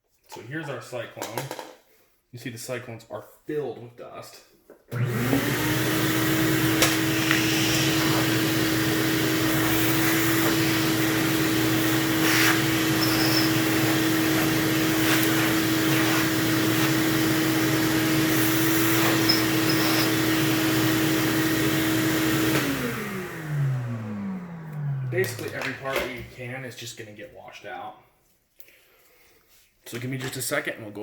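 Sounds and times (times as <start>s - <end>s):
vacuum cleaner motor running: 4.9s - 26.3s.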